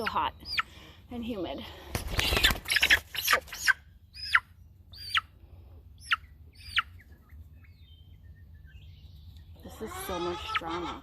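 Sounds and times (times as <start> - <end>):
chick distress peeps: 9.7 - 11.0.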